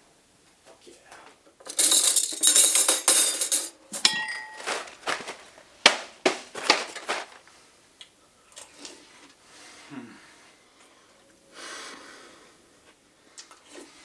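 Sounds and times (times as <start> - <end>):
noisy rattle: 1.7 - 3.7
dishware clinking: 1.7 - 5.4.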